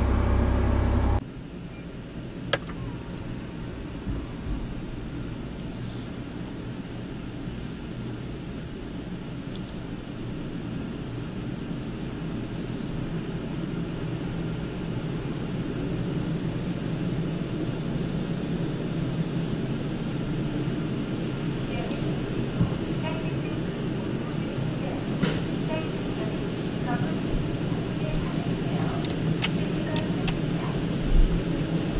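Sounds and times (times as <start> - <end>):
car wash machine rumble: 0.0 - 1.2.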